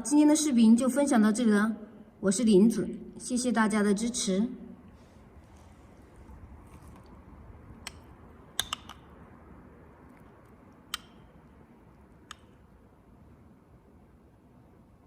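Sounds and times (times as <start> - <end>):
faint low background noise: 0.0 - 15.0
light sharp clicks: 10.4 - 12.6.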